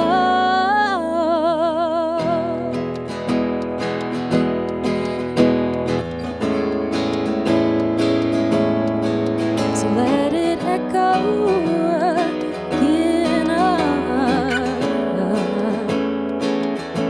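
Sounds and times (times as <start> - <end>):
woman singing with vibrato: 0.0 - 2.9, 9.8 - 16.2
acoustic guitar strumming: 0.0 - 17.0.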